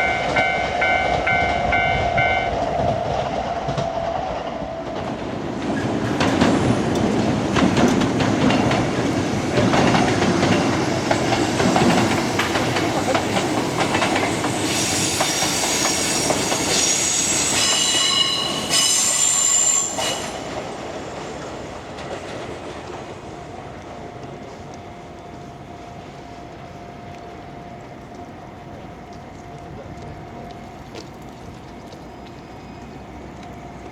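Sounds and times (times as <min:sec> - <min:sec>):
train wheels clicking over rail joints: 0:00.0 - 0:26.6
train wheels squealing: 0:10.8 - 0:21.6.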